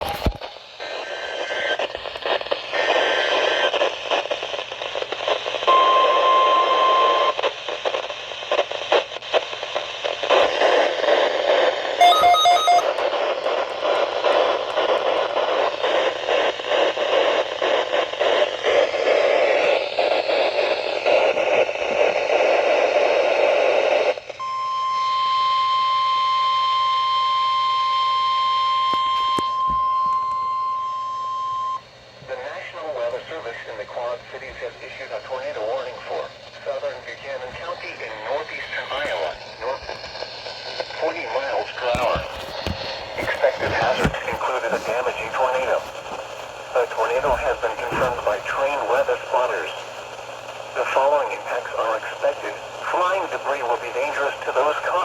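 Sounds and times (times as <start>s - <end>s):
crackling radio static: 0.0s - 24.4s, 32.1s - 55.0s
steady weather radio alert tone: 5.6s - 7.6s, 11.6s - 23.1s, 32.9s - 55.0s
brief beeps: 12.0s - 12.9s.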